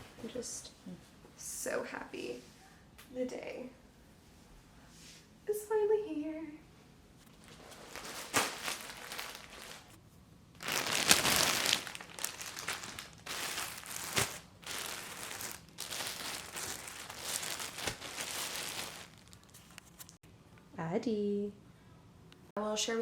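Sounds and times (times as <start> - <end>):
packaging crinkling and rustling: 7.3 - 10.0, 10.6 - 20.2.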